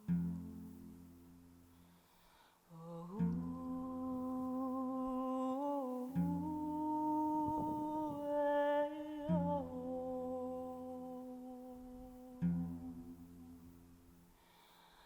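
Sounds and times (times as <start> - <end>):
person humming a lullaby: 2.7 - 13.9.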